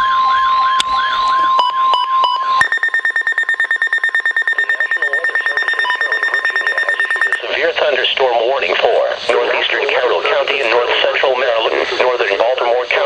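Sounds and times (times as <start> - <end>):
warbling siren: 0.0 - 7.4
steady warning tone: 0.0 - 7.6
rapid high-pitched alarm beeps: 1.0 - 7.5.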